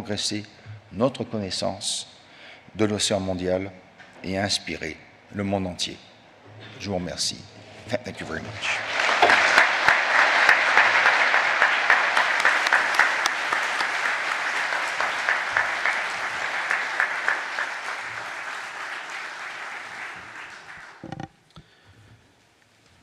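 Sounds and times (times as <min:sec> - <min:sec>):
audience applauding: 0:08.5 - 0:21.1.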